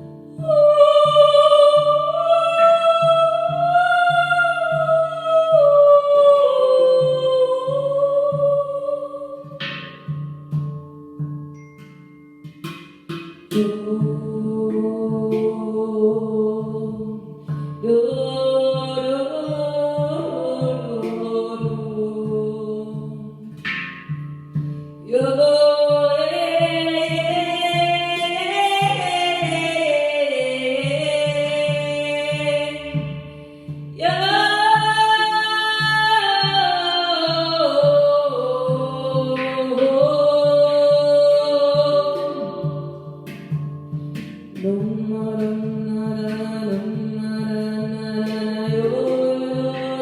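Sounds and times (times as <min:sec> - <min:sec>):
wordless singing: 0:00.0 - 0:09.8, 0:25.1 - 0:43.3
hand drum beat: 0:00.0 - 0:50.0.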